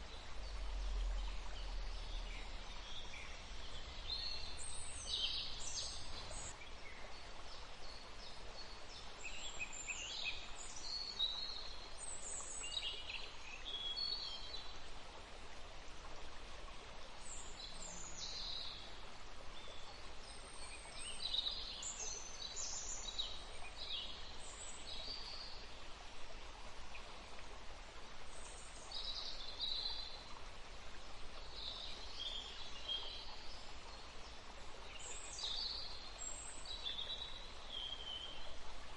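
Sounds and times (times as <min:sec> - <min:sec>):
songbirds chirping and trilling: 0:00.0 - 0:14.6
background hiss: 0:00.0 - 0:38.9.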